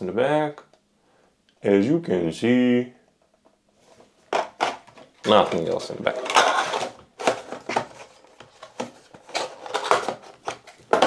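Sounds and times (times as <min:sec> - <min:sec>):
packaging rustling: 0:03.9 - 0:11.0.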